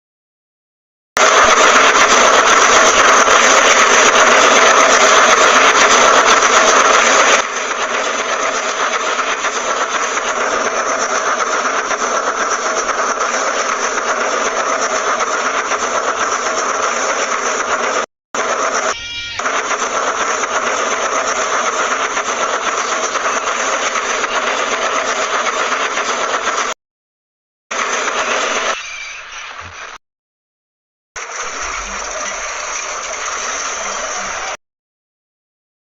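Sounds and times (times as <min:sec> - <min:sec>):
train running rumble: 0:01.2 - 0:26.8, 0:27.7 - 0:30.0, 0:31.2 - 0:34.6
held tones: 0:18.7 - 0:19.7
short pitched tone: 0:18.8 - 0:19.6, 0:28.4 - 0:30.0.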